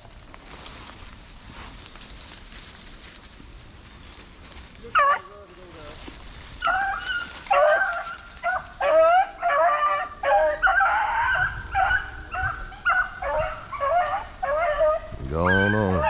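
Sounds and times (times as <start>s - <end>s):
dogs yipping: 4.9s - 5.3s, 6.6s - 16.0s.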